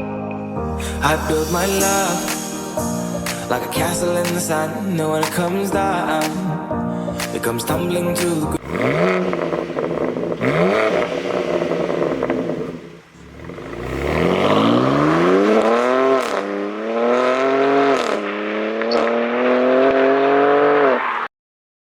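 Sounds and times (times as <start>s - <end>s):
car engine accelerating: 8.5s - 21.1s.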